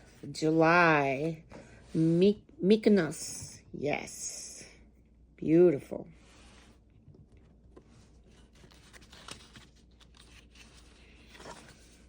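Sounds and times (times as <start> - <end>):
paper pages rustling: 7.4 - 12.0.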